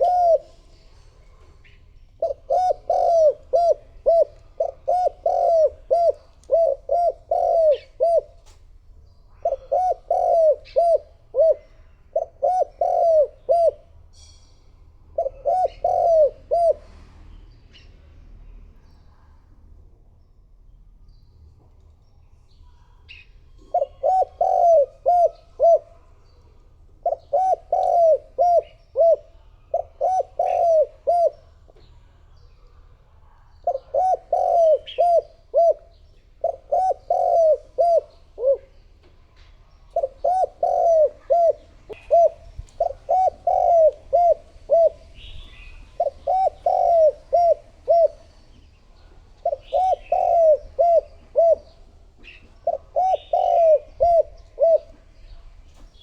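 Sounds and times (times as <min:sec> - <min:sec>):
dove cooing: 0:00.0 - 0:08.6, 0:09.3 - 0:14.0, 0:15.2 - 0:17.1, 0:23.1 - 0:26.4, 0:27.0 - 0:31.8, 0:33.6 - 0:38.9, 0:39.8 - 0:56.0
small birds chirping: 0:15.2 - 0:56.0.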